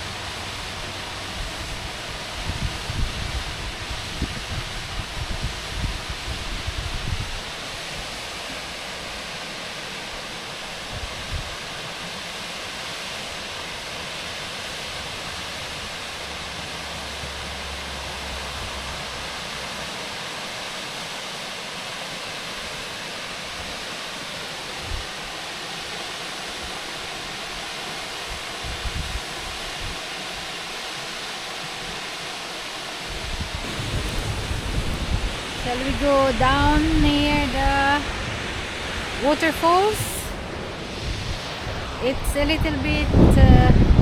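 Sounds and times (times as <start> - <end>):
waterfall roaring: 0.0 - 44.0
wind buffeting microphone: 0.7 - 8.3, 28.3 - 30.0, 33.1 - 44.0.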